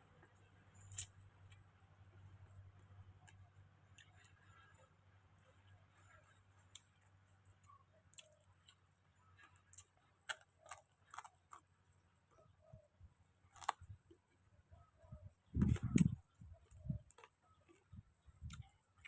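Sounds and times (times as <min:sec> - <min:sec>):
person chewing and eating: 0:02.7 - 0:12.0, 0:13.5 - 0:14.2, 0:15.6 - 0:19.0.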